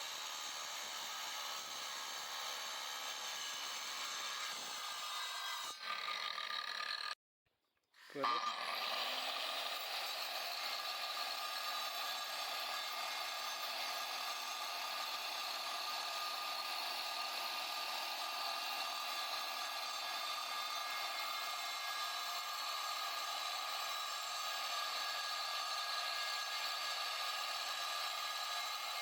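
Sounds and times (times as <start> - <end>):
angle grinder motor whine: 8.0 - 10.6.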